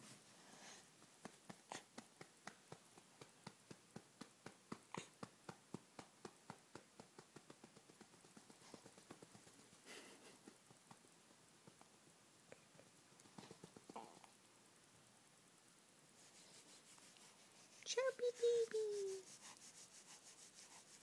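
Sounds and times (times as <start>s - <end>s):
soft patting on baby's back: 1.0s - 11.9s, 13.2s - 14.3s.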